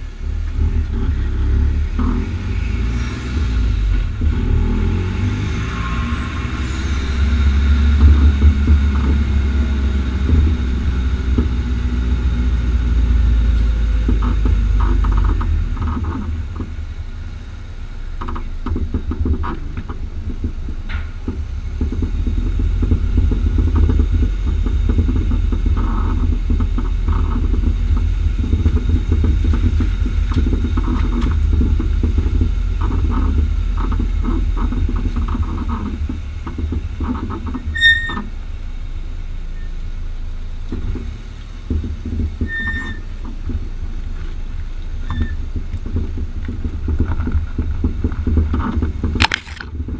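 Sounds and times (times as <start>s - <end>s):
road rumble of moving car: 0.0s - 49.9s
suspension knocks: 3.3s - 16.9s, 18.0s - 38.3s, 40.5s - 49.9s
high suspension squeaks: 32.7s - 38.4s, 42.1s - 43.5s, 44.1s - 45.6s.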